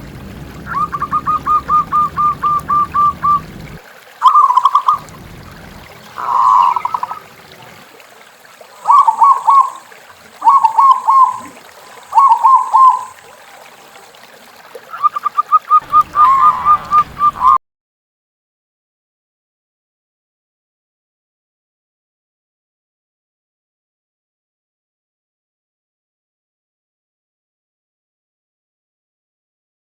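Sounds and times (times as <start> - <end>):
dove cooing: 0.6 - 7.3, 8.8 - 9.8, 10.4 - 13.2, 14.9 - 17.6.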